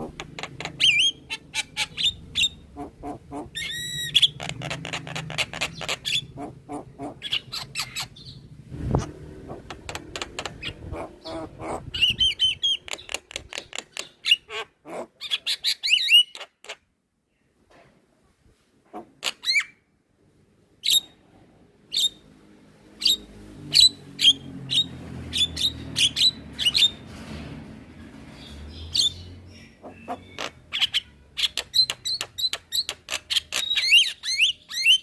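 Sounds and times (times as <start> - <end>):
bird calling with harsh clicks: 0.0 - 2.6, 3.6 - 6.3, 9.7 - 11.4, 12.0 - 16.8, 29.8 - 35.0
low hum: 8.4 - 12.2.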